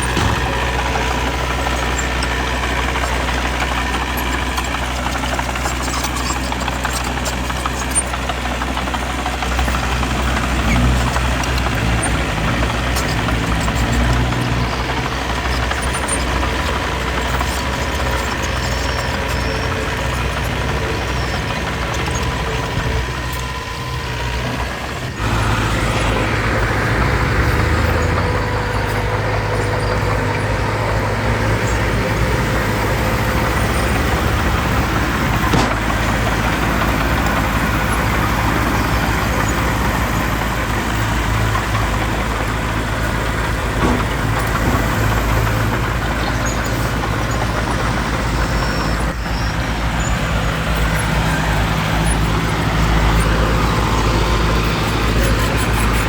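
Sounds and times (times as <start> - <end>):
heavy diesel machinery running: 0.0 - 56.0.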